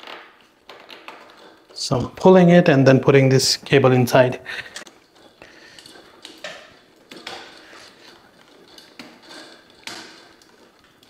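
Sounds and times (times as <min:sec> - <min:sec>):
rustling of cable sleeve: 0:04.5 - 0:11.0.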